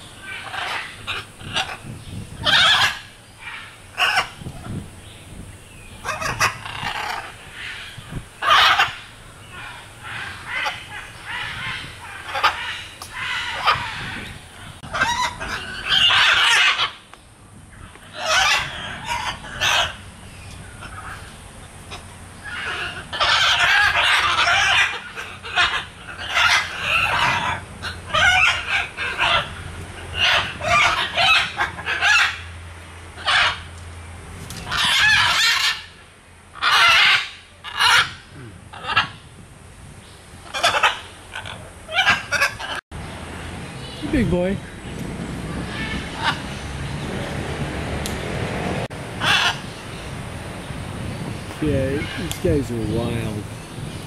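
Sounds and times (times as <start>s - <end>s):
parrots squawking: 0.2s - 4.8s, 6.0s - 17.0s, 17.8s - 20.0s, 21.9s - 32.5s, 33.2s - 33.7s, 34.6s - 39.3s, 40.4s - 42.8s, 45.5s - 46.7s, 49.2s - 50.2s, 51.2s - 53.9s.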